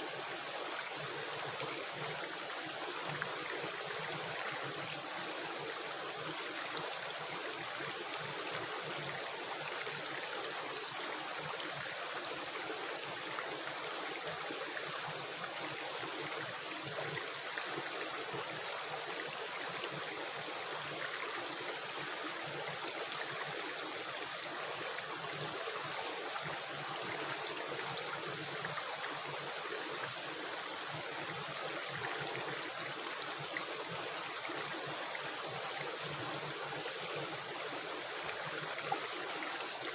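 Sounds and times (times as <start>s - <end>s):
stream water rushing and gurgling: 0.0s - 39.9s.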